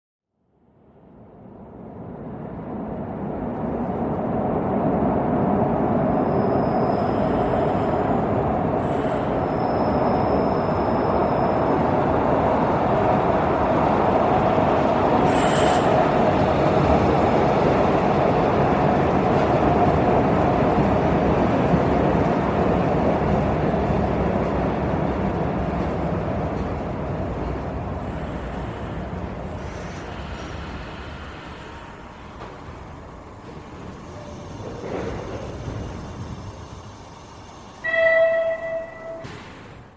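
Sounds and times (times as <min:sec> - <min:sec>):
metro train rumbling on rails: 0:00.6 - 0:39.9
faint high squeal: 0:37.8 - 0:39.5.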